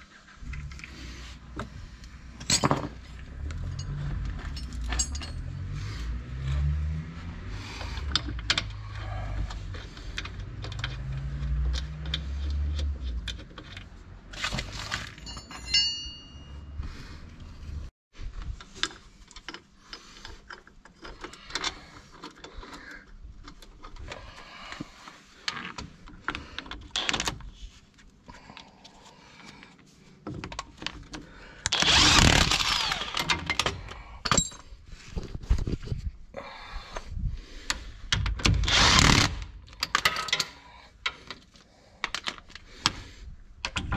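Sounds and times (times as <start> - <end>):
metal tools clinking on steel: 2.4 - 5.8, 15.1 - 16.8, 32.8 - 34.8.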